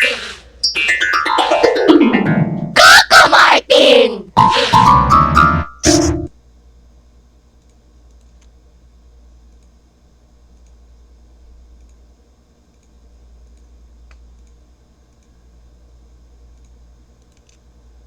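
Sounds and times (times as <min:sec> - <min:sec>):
faint low hum: 0:01.4 - 0:18.0
faint clicks: 0:10.5 - 0:10.8, 0:11.8 - 0:12.0, 0:12.7 - 0:15.3, 0:16.5 - 0:17.7.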